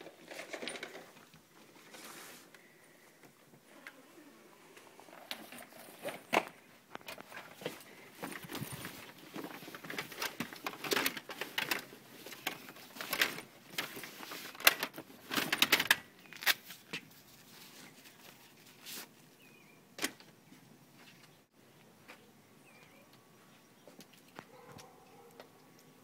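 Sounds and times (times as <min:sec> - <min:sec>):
footsteps crunching on dry ground: 0:05.7 - 0:13.0
faint bird chirps: 0:21.2 - 0:24.4.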